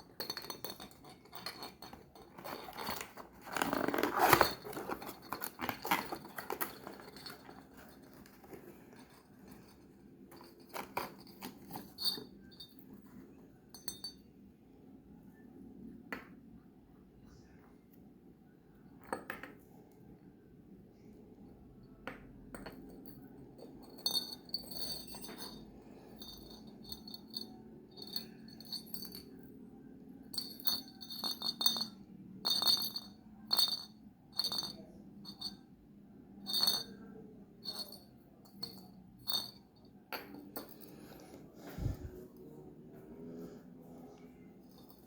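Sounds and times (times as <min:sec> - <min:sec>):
glass bulbs clinking: 0:00.0 - 0:03.0.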